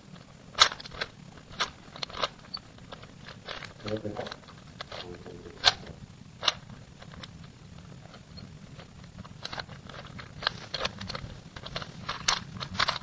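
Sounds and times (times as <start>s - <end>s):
plastic puzzle cube clicking: 0.6s - 7.3s.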